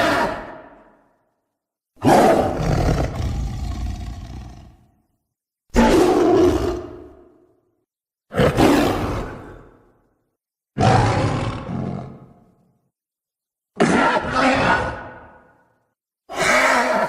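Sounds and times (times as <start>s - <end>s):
monster roars: 0.0s - 0.8s, 10.8s - 12.3s, 13.8s - 15.5s, 16.3s - 17.0s.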